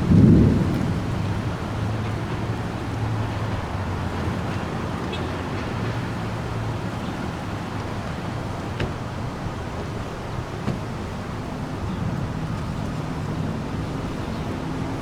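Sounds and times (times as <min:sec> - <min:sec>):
thunder clap: 0:00.0 - 0:04.6
rain: 0:00.0 - 0:15.0
thunder rumbling: 0:00.0 - 0:15.0
wind: 0:00.0 - 0:15.0.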